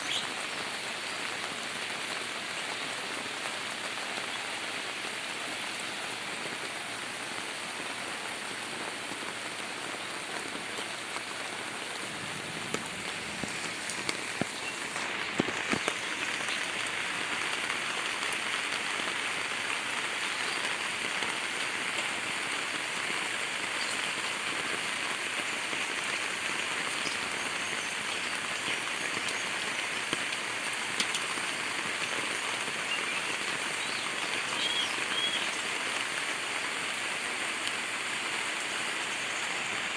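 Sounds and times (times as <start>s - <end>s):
heavy rain splattering: 0.0s - 39.9s
single raindrops striking: 12.0s - 16.4s.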